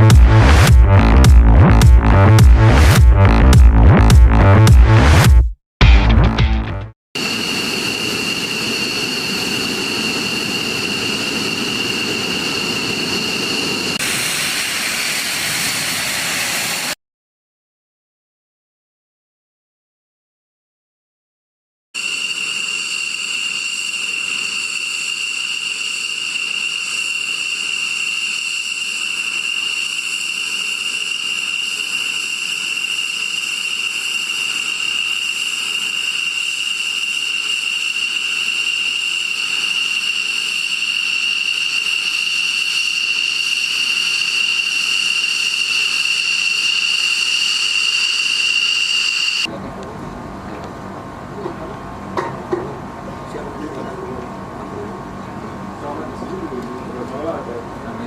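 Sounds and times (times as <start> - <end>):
jet engine whining: 7.2 - 17.0, 22.0 - 58.0.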